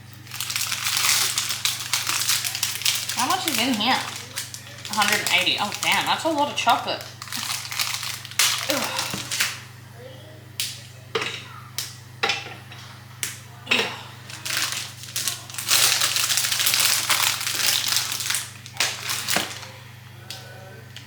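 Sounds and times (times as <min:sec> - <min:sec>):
crinkling and crackling: 0:00.0 - 0:09.7, 0:14.2 - 0:21.0
chocolate bar snapping: 0:00.2 - 0:06.2, 0:07.1 - 0:09.6, 0:10.6 - 0:10.8, 0:11.8 - 0:12.0, 0:14.3 - 0:19.7.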